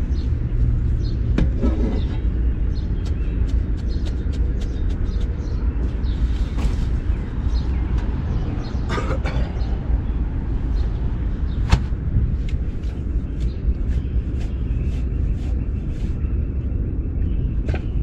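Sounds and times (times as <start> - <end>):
steady low rumble: 0.0 - 18.0
sharp knock: 11.7 - 11.9.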